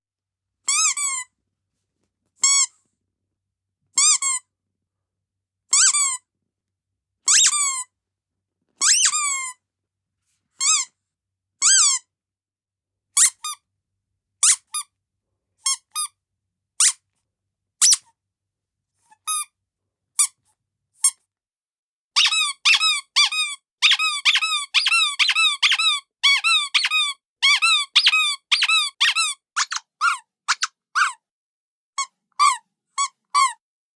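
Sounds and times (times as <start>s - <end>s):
squeaky dog toy squeaking: 0.7s - 1.3s, 4.0s - 4.4s, 7.3s - 7.8s, 8.8s - 9.6s, 10.6s - 10.9s, 11.6s - 12.0s, 13.2s - 13.6s, 14.4s - 14.9s, 16.8s - 17.0s, 17.8s - 18.1s, 22.2s - 31.2s, 32.0s - 33.6s.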